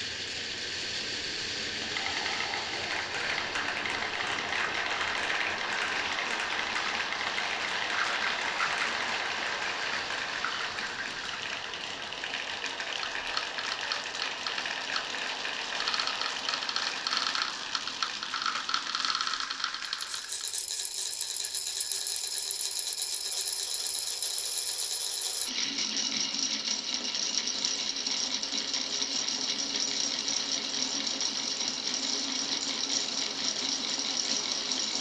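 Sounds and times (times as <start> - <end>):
marbles rolling and clattering: 1.7 - 25.5.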